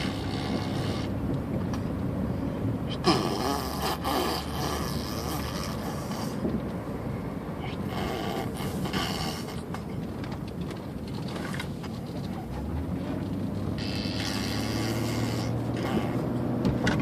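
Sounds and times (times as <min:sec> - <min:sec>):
baby blowing raspberries: 0:00.0 - 0:01.2, 0:02.9 - 0:06.4, 0:07.7 - 0:09.6, 0:13.8 - 0:16.3.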